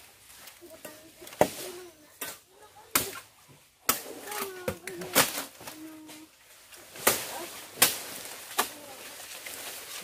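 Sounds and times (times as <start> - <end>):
blade chopping palm fronds: 3.8 - 5.8, 6.9 - 10.0.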